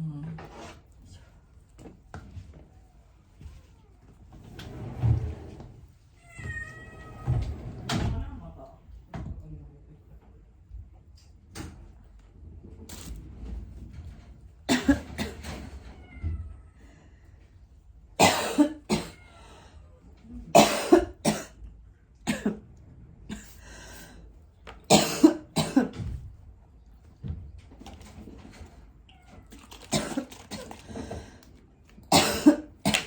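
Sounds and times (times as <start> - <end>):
kittens mewing: 6.2 - 7.4.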